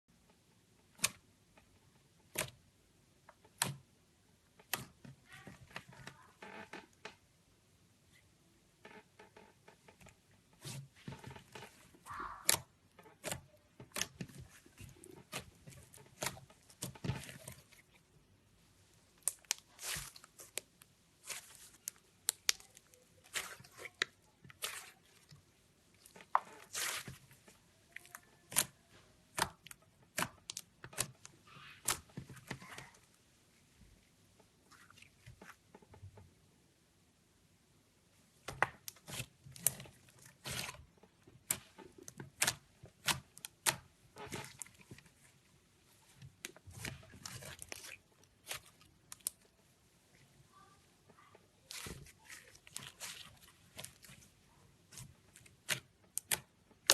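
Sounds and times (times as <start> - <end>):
slime squished by hand: 19.1 - 33.0, 38.4 - 50.5, 51.2 - 56.9.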